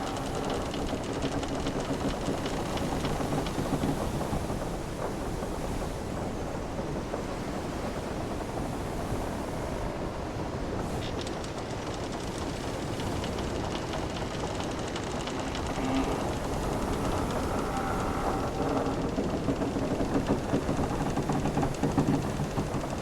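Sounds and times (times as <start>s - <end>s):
wind: 0.0s - 23.0s
ship timbers creaking: 11.0s - 23.0s.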